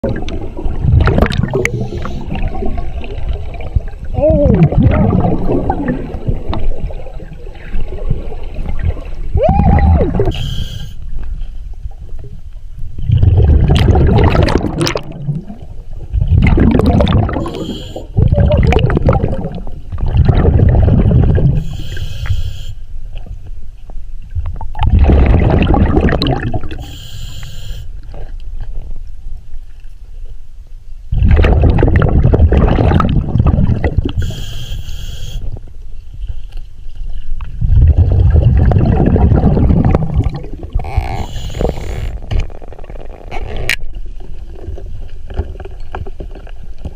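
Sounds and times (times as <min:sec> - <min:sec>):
bubbling underwater exhalations: 0:00.0 - 0:10.4, 0:13.0 - 0:21.8, 0:24.8 - 0:26.9, 0:31.2 - 0:34.4, 0:37.6 - 0:43.6
regulator hissing inhalations: 0:10.3 - 0:11.0, 0:17.5 - 0:18.1, 0:21.6 - 0:22.8, 0:26.8 - 0:27.9, 0:34.2 - 0:35.5.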